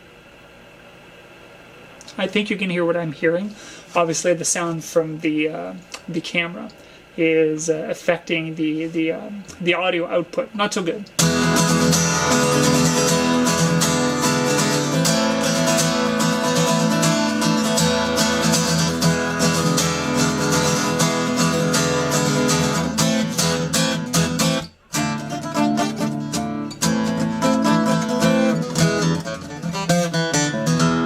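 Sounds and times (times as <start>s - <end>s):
acoustic guitar strumming: 11.2s - 31.0s.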